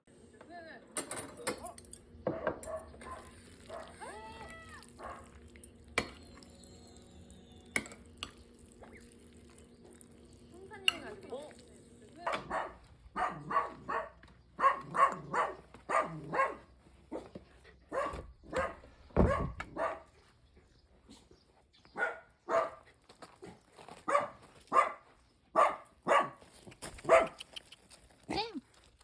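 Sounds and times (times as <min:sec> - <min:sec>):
dog barking: 0:02.3 - 0:04.0, 0:04.8 - 0:05.4, 0:12.2 - 0:17.3, 0:17.9 - 0:20.2, 0:21.9 - 0:22.8, 0:24.0 - 0:26.4, 0:27.0 - 0:27.5.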